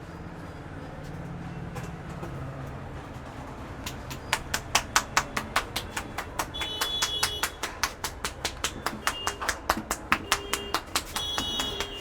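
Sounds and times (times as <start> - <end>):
hands tapping head: 3.8 - 12.0.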